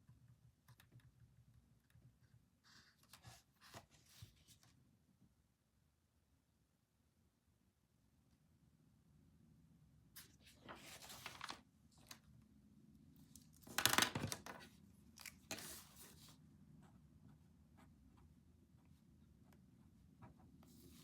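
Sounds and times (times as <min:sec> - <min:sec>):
paper rustling: 0:10.2 - 0:12.2, 0:13.3 - 0:16.4.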